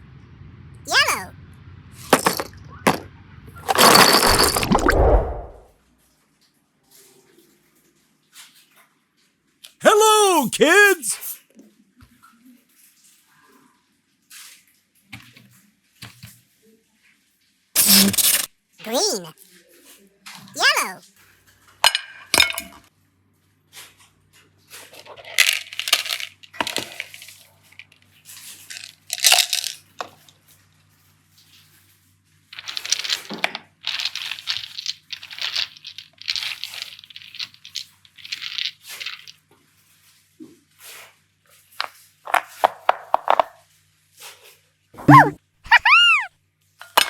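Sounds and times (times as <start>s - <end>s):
crinkly rustling and clinking: 3.6s - 4.9s, 32.6s - 40.0s.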